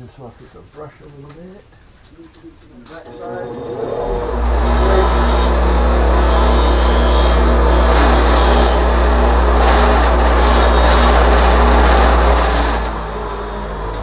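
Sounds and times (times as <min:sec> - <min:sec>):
power tool motor running: 0:03.5 - 0:14.0.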